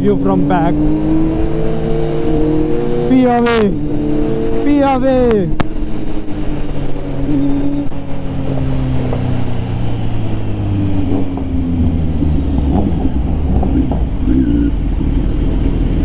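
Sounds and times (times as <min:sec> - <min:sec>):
motorcycle engine running: 0:00.0 - 0:16.0
road and wind rumble: 0:00.0 - 0:16.0.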